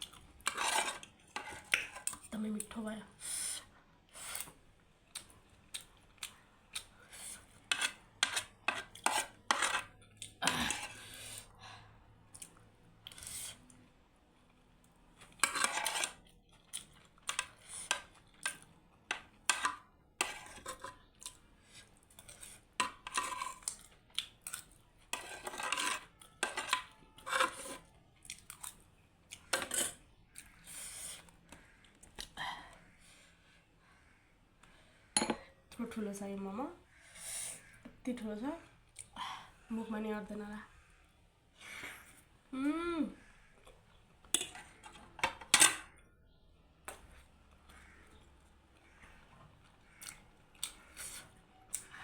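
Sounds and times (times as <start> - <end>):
cutlery clinking on dishes: 35.2 - 35.4.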